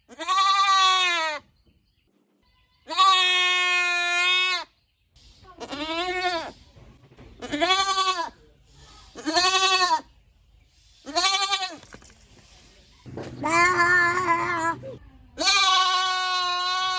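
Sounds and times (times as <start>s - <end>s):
goats bleating: 0.1s - 1.4s, 13.1s - 16.9s.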